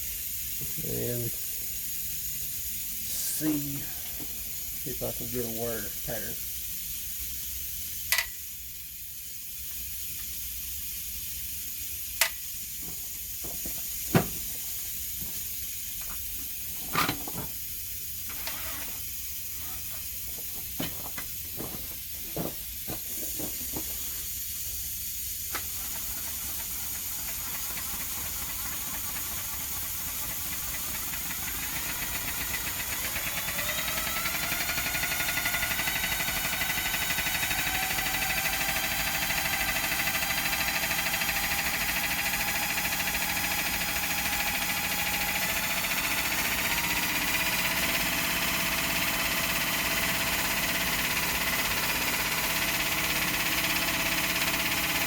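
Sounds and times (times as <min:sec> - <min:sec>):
steady hiss: 0:00.0 - 0:33.7
sharp metallic clicks and knocks: 0:08.1 - 0:08.4.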